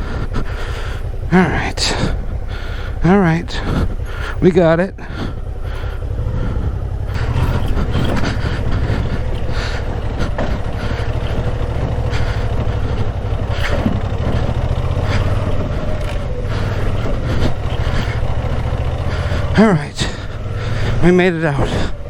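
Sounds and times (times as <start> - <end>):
motorcycle engine running at low revs: 0.0 - 22.0
knocks and rattles: 5.0 - 21.0.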